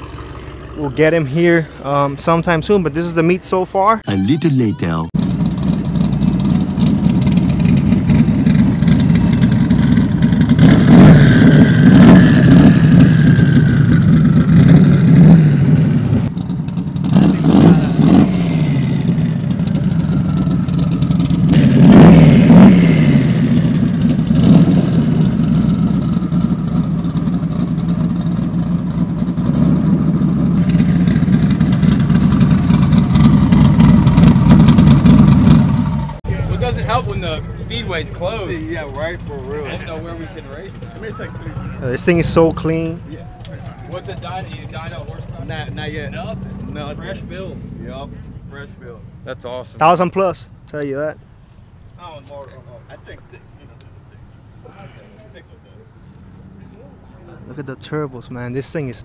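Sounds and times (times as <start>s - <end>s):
car engine idling loudly: 0.0s - 2.9s, 5.2s - 48.5s
engine throttle blips: 0.0s - 50.7s.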